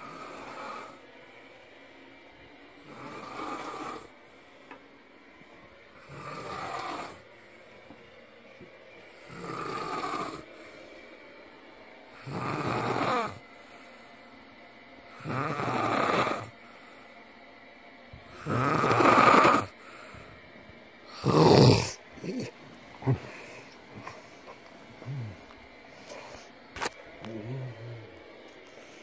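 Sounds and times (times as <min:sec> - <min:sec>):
man snoring: 0:00.0 - 0:01.0, 0:02.8 - 0:04.2, 0:06.0 - 0:07.3, 0:09.1 - 0:10.7, 0:12.2 - 0:13.4, 0:15.2 - 0:16.5, 0:18.4 - 0:19.8, 0:21.1 - 0:23.5, 0:25.0 - 0:25.5, 0:27.2 - 0:28.2.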